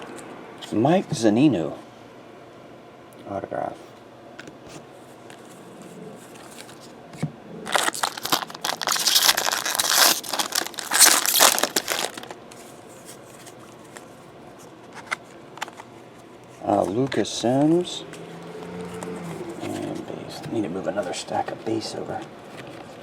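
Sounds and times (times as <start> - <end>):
plastic packaging crinkling: 7.7 - 12.4.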